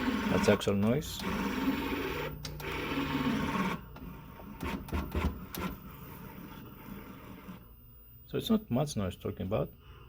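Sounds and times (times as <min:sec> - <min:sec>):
servo motor electrical hum: 0:00.0 - 0:08.0.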